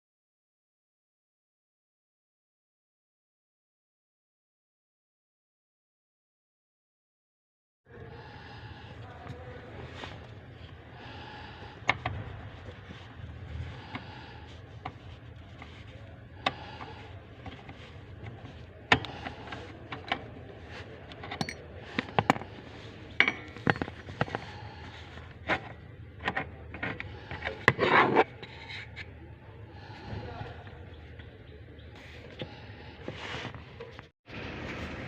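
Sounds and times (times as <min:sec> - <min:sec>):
metal scraping: 0:12.1 - 0:29.2
tools clicking and knocking: 0:21.0 - 0:22.5, 0:23.2 - 0:24.5.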